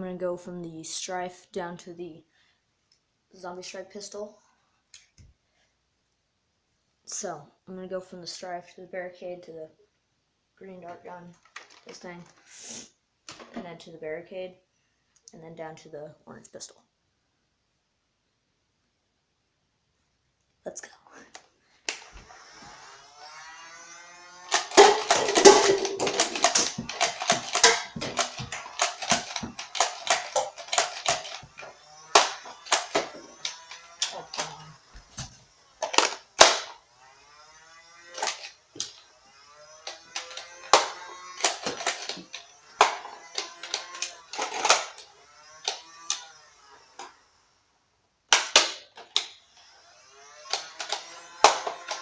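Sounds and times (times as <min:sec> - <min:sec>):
toy blaster flywheels whining: 0:21.4 - 0:52.0
foam darts clicking and knocking: 0:24.5 - 0:31.6, 0:32.2 - 0:36.7.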